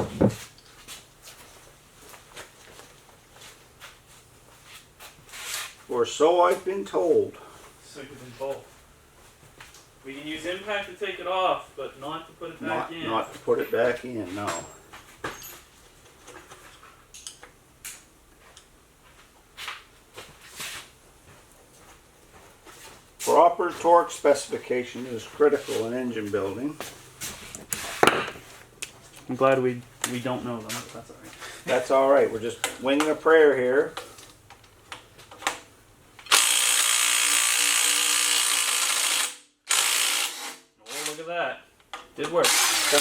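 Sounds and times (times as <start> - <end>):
shuffling: 0.0 - 17.1, 18.3 - 36.2
tools clinking and scraping: 13.0 - 17.6, 26.8 - 31.9
impact wrench hammering: 27.6 - 28.5.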